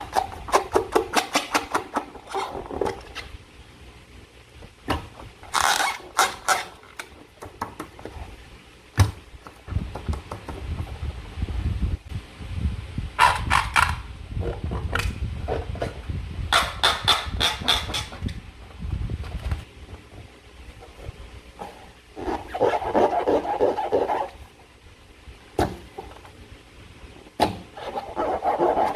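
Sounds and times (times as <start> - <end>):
low rubbing handling noise: 17.4 - 24.6, 27.7 - 28.9.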